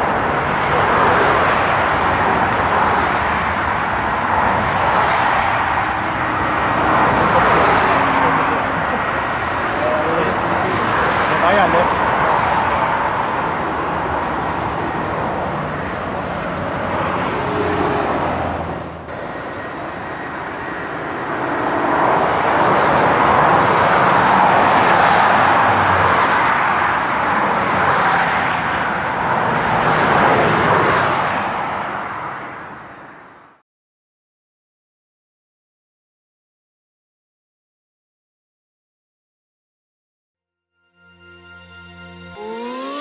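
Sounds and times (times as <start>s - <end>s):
jet engines roaring: 0.0s - 32.3s.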